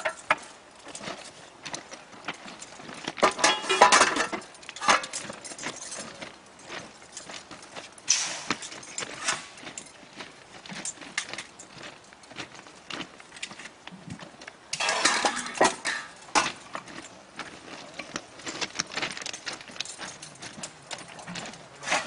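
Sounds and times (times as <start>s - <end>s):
metal tools clinking and knocking: 0.0s - 1.4s, 2.3s - 10.1s, 14.7s - 22.0s.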